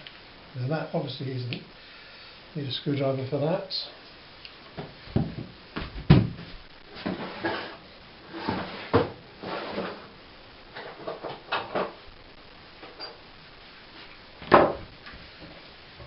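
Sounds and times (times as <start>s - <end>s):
loud thump: 14.5s - 14.9s.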